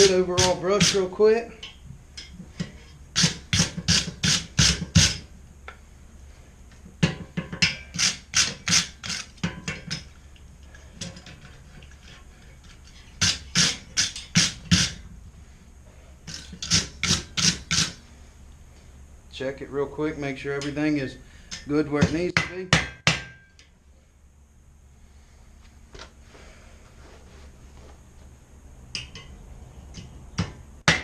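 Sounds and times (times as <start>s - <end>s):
wire brush scrubbing steel: 0.0s - 1.3s, 7.8s - 9.4s.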